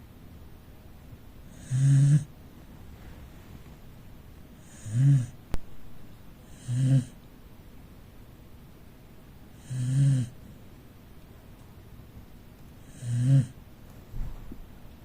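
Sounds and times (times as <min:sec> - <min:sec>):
dog snoring: 0:01.5 - 0:02.3, 0:04.6 - 0:05.4, 0:06.4 - 0:07.2, 0:09.5 - 0:10.4, 0:12.8 - 0:13.6.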